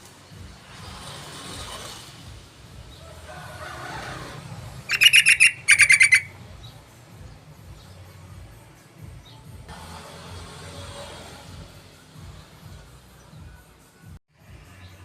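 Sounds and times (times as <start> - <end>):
bird chattering: 4.9 - 6.3.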